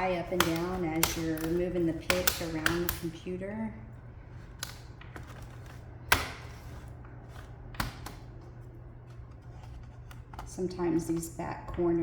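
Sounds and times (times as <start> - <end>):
plastic clips popping loose: 0.3 - 3.1.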